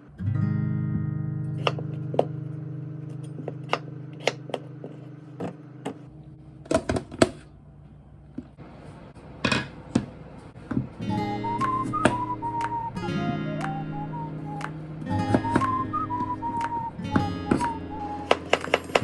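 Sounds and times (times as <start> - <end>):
held guitar chord: 11.0 - 18.3
kitchen utensils clicking: 18.2 - 19.0.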